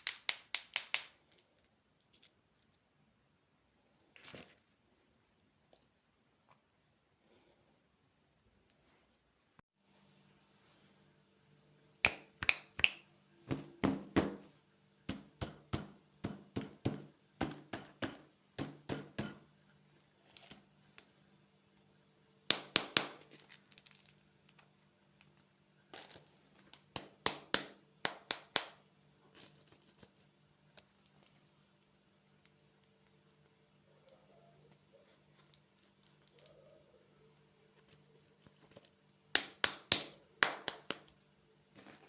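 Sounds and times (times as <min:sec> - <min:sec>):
faint steady hum: 0:01.2 - 0:42.0
candy packaging crinkling and tearing: 0:23.1 - 0:26.9.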